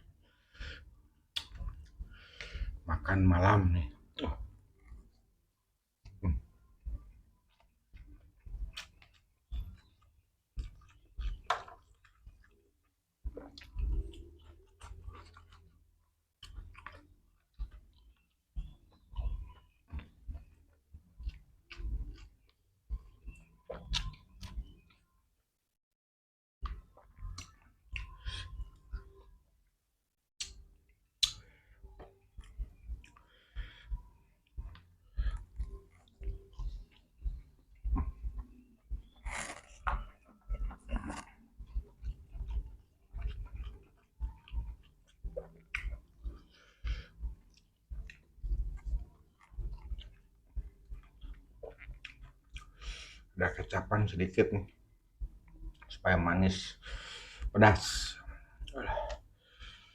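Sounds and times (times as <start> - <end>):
chewing: 0.6 - 2.7, 6.0 - 25.1, 26.6 - 29.3, 30.4 - 59.9
wet mouth clicks: 1.3 - 1.8, 23.4 - 24.8, 30.4 - 30.6, 31.2 - 31.5, 37.9 - 46.4.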